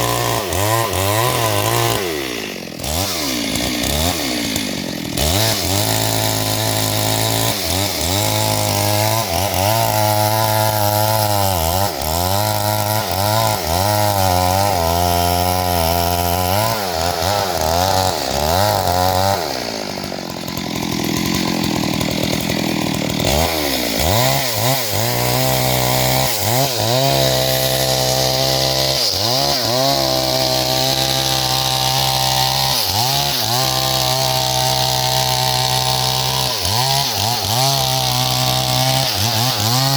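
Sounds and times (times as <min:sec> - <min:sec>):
chainsaw cutting into tree: 0:00.0 - 0:39.9.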